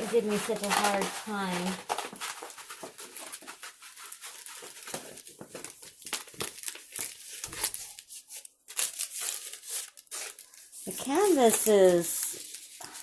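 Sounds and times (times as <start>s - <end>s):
stiff canvas crinkling: 8.8s - 13.0s.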